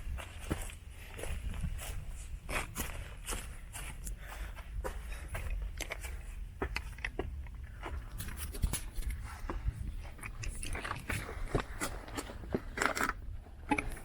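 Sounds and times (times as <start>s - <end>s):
footsteps on rocky trail: 0.0s - 14.0s
steady low rumble: 0.0s - 14.0s.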